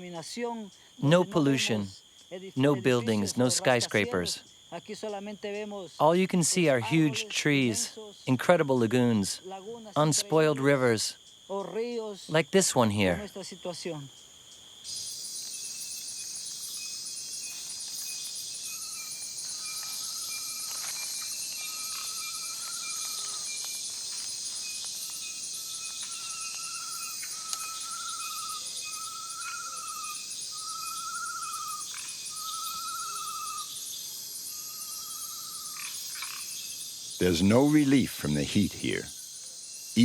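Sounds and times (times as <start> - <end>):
insect chorus: 0.0 - 40.0
warbling animal call: 26.2 - 33.7.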